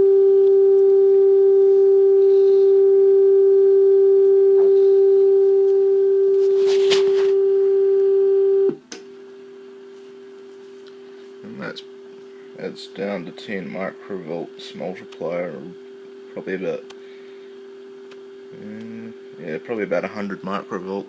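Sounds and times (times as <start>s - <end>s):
steady test tone from speaker: 0.0s - 21.0s
scratchy rustle: 6.4s - 7.4s.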